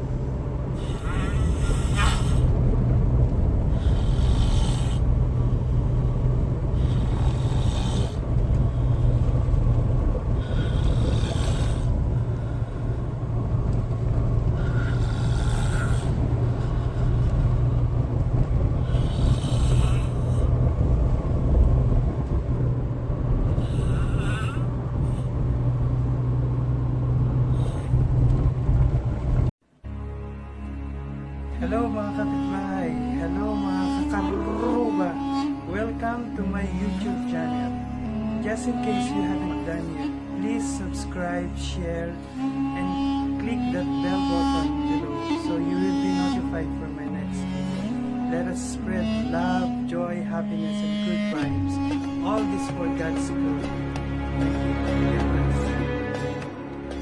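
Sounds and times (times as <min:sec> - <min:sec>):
steady low drone: 0:00.0 - 0:57.0
loud snoring: 0:03.8 - 0:05.0, 0:06.8 - 0:08.2, 0:10.4 - 0:11.9, 0:14.7 - 0:16.2, 0:18.8 - 0:20.3.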